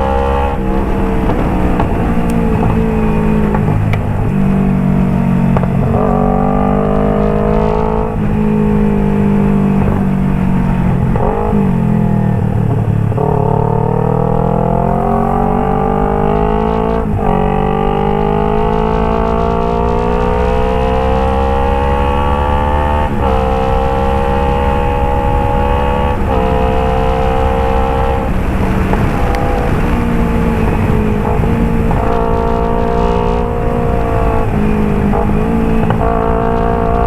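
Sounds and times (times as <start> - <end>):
microphone crackle: 0.0 - 13.6, 23.1 - 37.0
motorcycle engine revving: 0.0 - 37.0.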